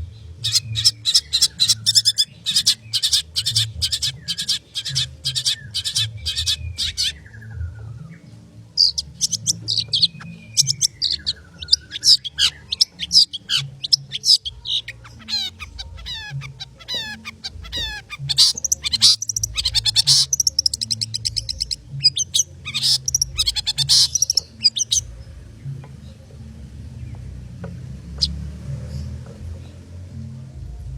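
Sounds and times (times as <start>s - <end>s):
bird scratchy chattering song: 0.4s - 7.5s, 8.8s - 25.3s.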